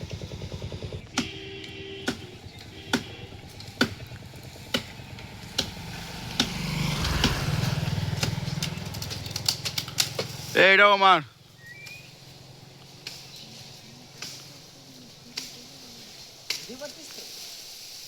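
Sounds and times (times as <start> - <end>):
blade chopping tree branch: 0.0 - 10.6, 12.8 - 17.0
low engine hum: 0.0 - 16.7.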